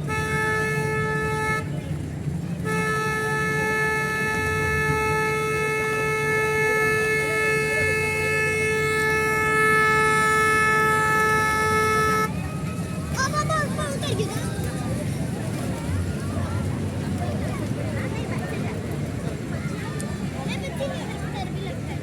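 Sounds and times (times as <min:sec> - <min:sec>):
horn blasts: 0:00.0 - 0:01.8, 0:02.6 - 0:12.4.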